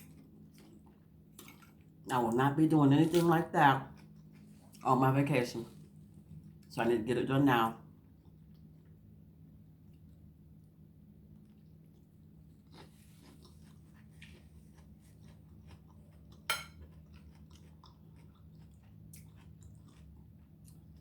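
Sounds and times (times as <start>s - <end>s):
person chewing food: 0.0s - 2.0s, 3.9s - 4.9s, 7.9s - 9.2s, 11.1s - 21.0s.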